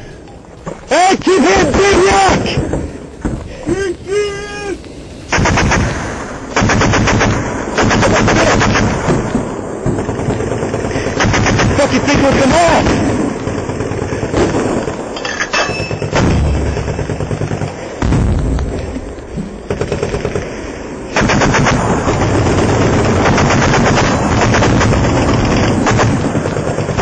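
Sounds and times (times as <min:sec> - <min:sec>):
automatic weapon fire: 0:05.3 - 0:15.2, 0:15.8 - 0:18.6, 0:19.7 - 0:27.0.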